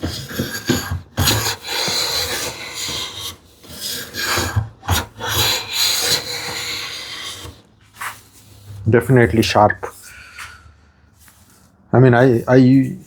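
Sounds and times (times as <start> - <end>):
hand plane cutting wood: 0.0 - 10.4.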